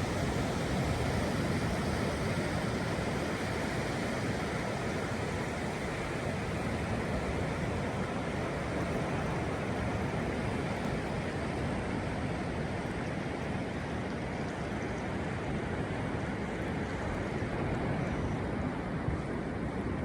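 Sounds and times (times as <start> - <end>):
sea surf breaking on beach: 0.0 - 13.7.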